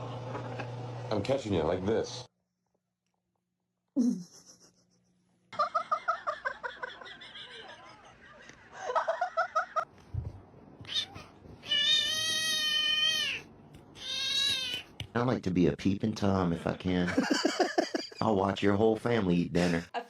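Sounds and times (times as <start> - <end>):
person laughing: 4.0 - 9.8
cat meowing: 10.8 - 14.9.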